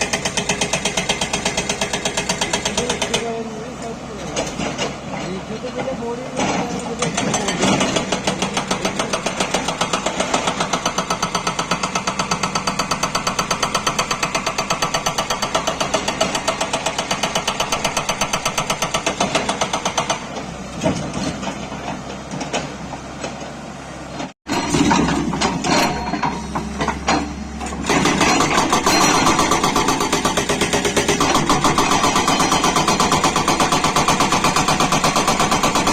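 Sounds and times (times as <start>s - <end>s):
hydraulic rock breaker hammering: 0.0s - 23.5s, 24.5s - 35.9s
excavator engine running: 0.0s - 35.9s.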